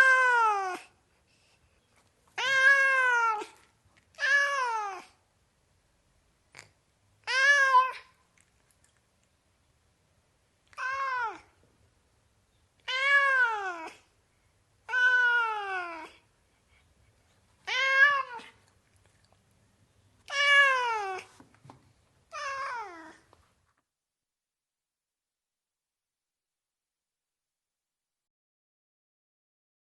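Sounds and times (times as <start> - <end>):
cat meowing: 2.4 - 5.2, 7.2 - 8.2, 10.7 - 11.6, 12.8 - 14.0, 14.9 - 16.2, 17.6 - 18.6, 20.2 - 21.4, 22.3 - 23.2.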